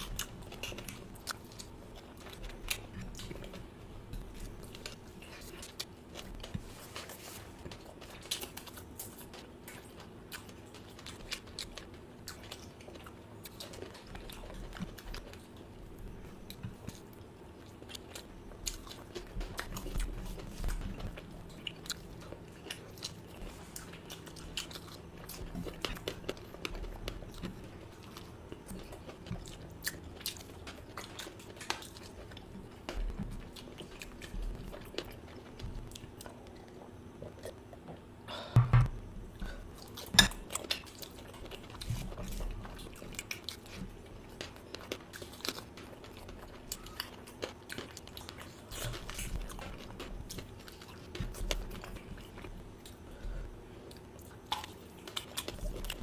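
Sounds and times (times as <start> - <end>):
chewing with wet smacks: 0.0 - 38.1, 39.4 - 56.0.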